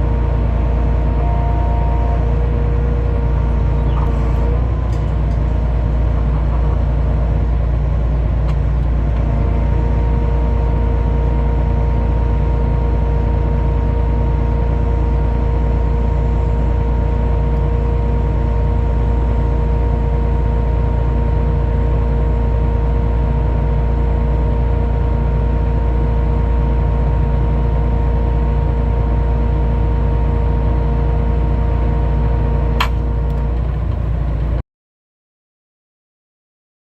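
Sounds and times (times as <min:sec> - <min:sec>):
vehicle engine rumbling: 0:00.0 - 0:34.6
steady whine: 0:32.6 - 0:34.6.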